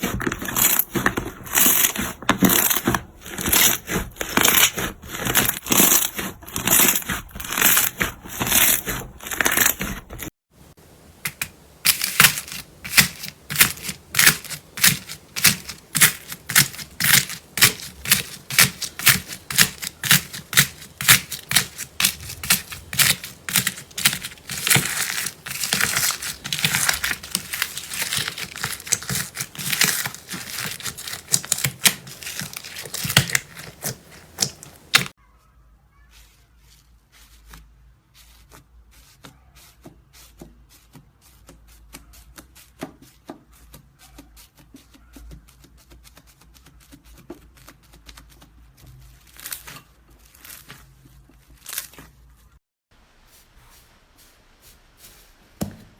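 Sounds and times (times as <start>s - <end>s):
slime crackling by hand: 11.2s - 35.2s.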